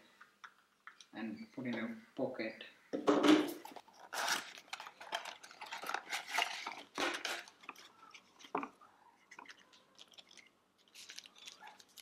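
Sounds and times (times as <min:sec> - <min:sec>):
plastic parts clicking and tapping: 0:03.0 - 0:12.0.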